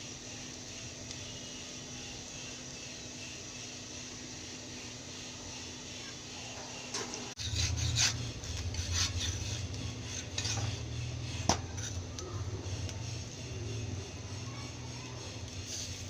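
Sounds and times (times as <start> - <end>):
utensils scraping cookware: 6.6 - 12.2, 14.7 - 16.0.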